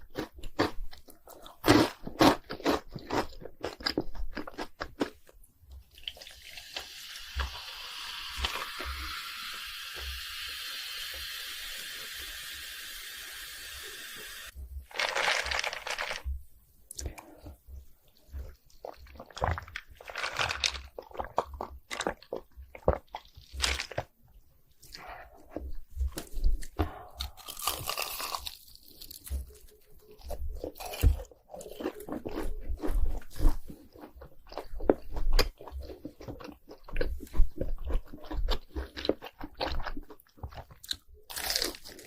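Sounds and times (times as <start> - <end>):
crunchy chewing of snacks: 0.0 - 6.4, 14.9 - 42.0.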